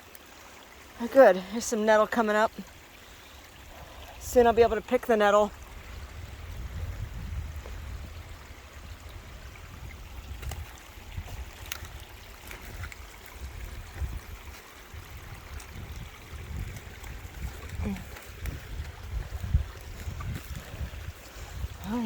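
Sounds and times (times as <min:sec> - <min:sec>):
rainwater trickling: 0:00.0 - 0:22.0
low microphone rumble: 0:05.5 - 0:11.5, 0:13.4 - 0:22.0.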